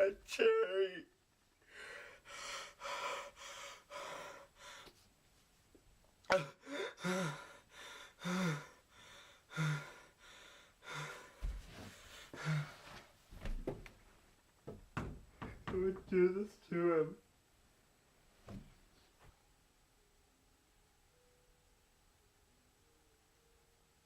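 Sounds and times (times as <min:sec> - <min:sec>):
person crying in gasping sobs: 0:06.3 - 0:08.9.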